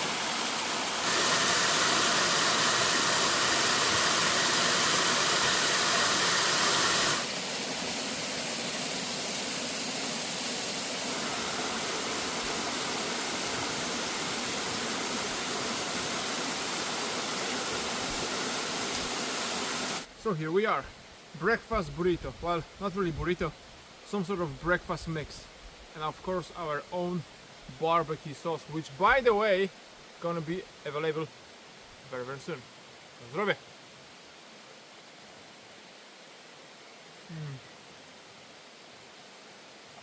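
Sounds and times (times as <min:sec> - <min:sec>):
waterfall rushing: 0:00.0 - 0:20.4.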